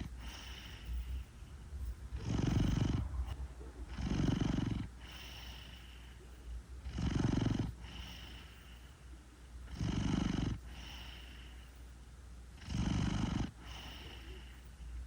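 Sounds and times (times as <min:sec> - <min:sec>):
cat snoring: 0:00.0 - 0:01.3, 0:02.1 - 0:08.8, 0:09.7 - 0:11.6, 0:12.6 - 0:14.6.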